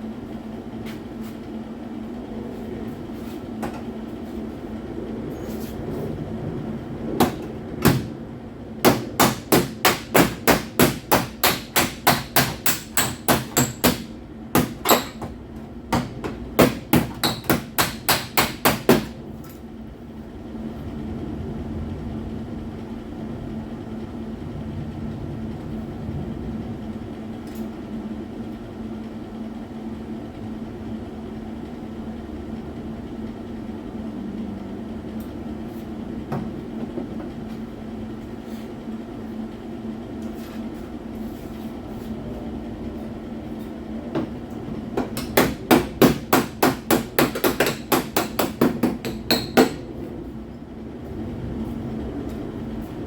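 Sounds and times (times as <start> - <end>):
steady low hum: 0.0 - 53.0
hammer on sheet metal: 8.8 - 15.3, 15.9 - 19.2, 45.0 - 49.9.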